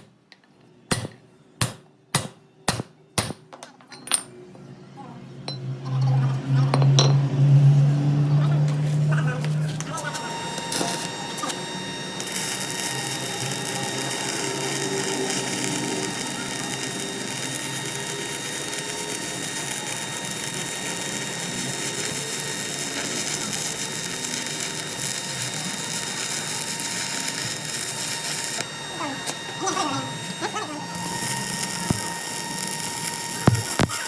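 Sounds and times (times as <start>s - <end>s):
steady high tones: 9.9s - 34.0s
machine tool whirring: 10.1s - 34.0s.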